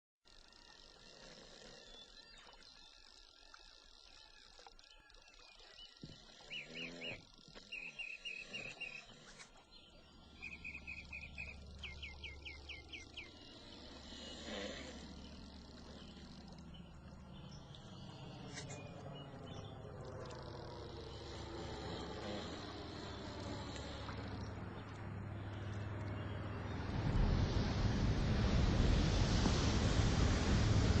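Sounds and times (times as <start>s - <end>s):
bird chirping: 1.7s - 22.4s
airplane rumble: 5.7s - 31.0s.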